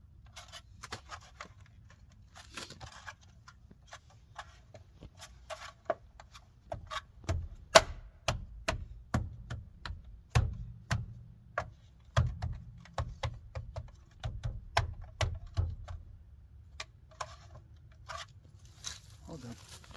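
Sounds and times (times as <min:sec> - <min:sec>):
plastic knocking onto wheel: 0:12.1 - 0:16.0.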